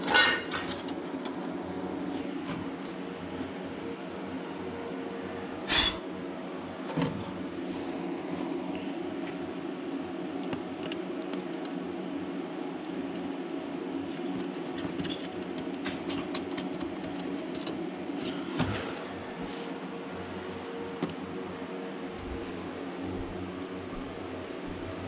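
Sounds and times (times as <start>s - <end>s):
steady low fan hum: 0.0s - 25.0s
small parts clicking and tapping: 12.8s - 18.3s.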